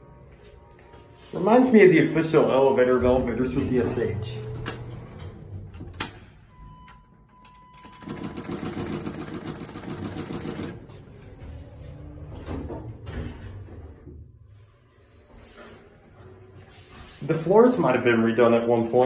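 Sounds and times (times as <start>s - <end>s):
steady elevator tone: 0.0s - 9.0s, 10.8s - 16.7s
elevator running low: 2.0s - 14.6s.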